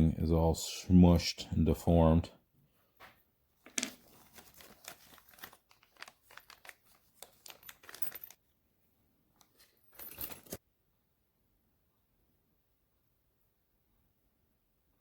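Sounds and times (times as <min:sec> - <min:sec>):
packaging crinkling and tearing: 0:04.0 - 0:08.3.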